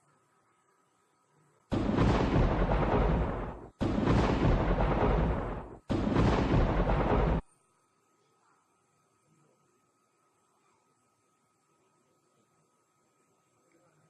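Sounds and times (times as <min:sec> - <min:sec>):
loud blasts of noise: 0:01.7 - 0:07.5.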